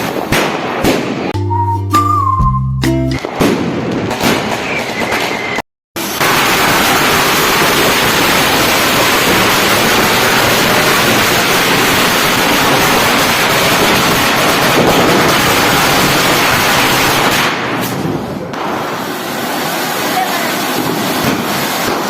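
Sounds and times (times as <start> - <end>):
firework hissing: 4.5 - 22.0.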